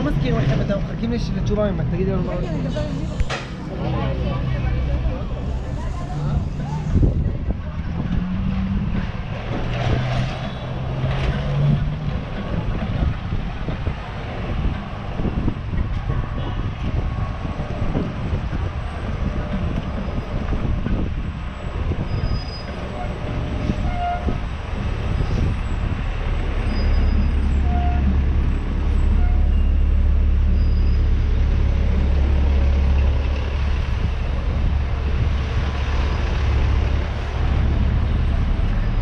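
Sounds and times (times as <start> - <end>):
passers-by talking: 0.0 - 9.6
road traffic: 0.0 - 39.0.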